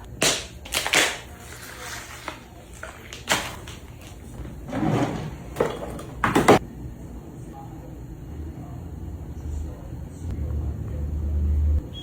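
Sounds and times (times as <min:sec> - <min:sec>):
knocks and clunks of objects: 0:03.2 - 0:06.6.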